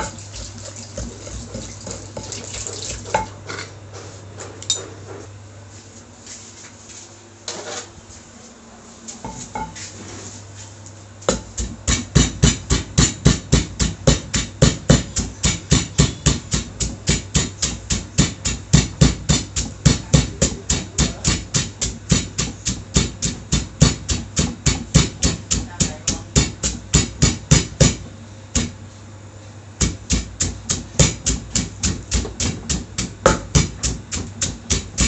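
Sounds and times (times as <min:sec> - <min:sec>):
pestle striking mortar: 0:00.0 - 0:03.3, 0:11.3 - 0:28.8, 0:29.8 - 0:35.0.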